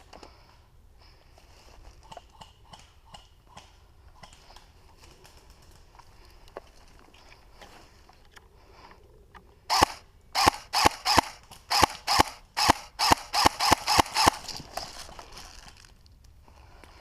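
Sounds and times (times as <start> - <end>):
airsoft gun shots: 9.7 - 14.4.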